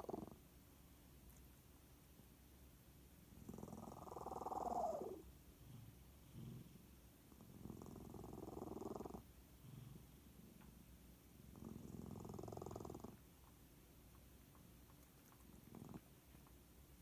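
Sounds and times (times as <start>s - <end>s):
sleeping cat rumbling breaths: 0.0s - 0.5s, 3.3s - 13.3s, 15.4s - 16.6s.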